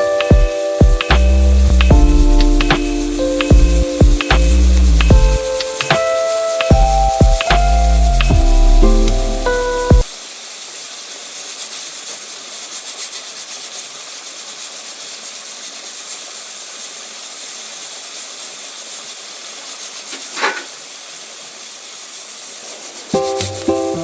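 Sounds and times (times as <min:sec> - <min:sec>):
background music: 0:00.0 - 0:10.1, 0:23.2 - 0:24.0
food sizzling in oil: 0:08.5 - 0:24.0.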